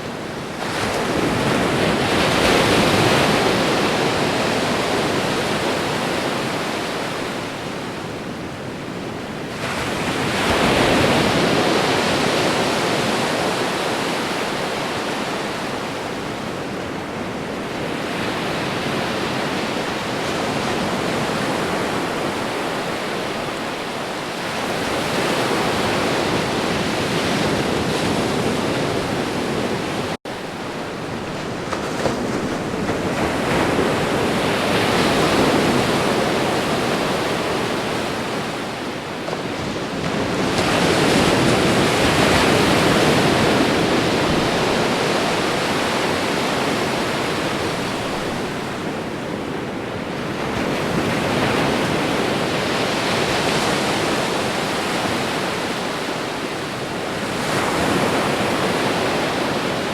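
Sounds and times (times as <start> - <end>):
waves breaking on shore: 0.0 - 59.9.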